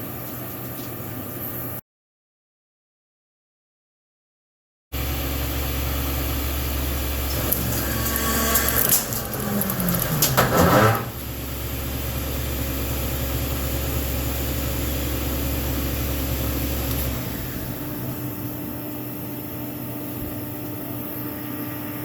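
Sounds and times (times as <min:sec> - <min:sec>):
milling machine humming: 0:06.4 - 0:22.0.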